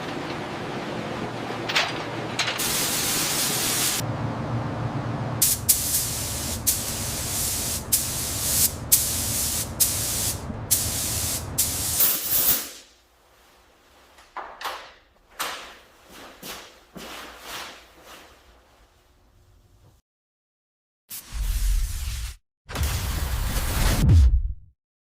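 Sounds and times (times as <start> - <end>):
spray gun hissing: 2.6 - 4.0, 5.4 - 12.8
low steady hum: 4.0 - 11.6.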